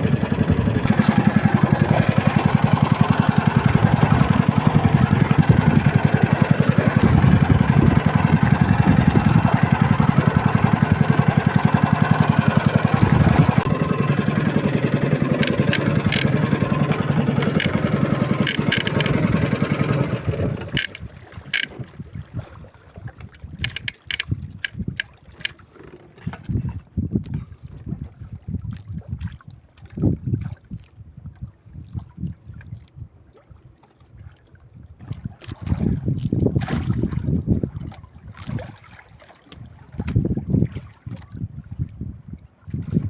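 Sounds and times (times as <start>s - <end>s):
boat motor running: 0.0s - 22.1s, 23.5s - 26.5s
light clicks: 23.6s - 25.5s.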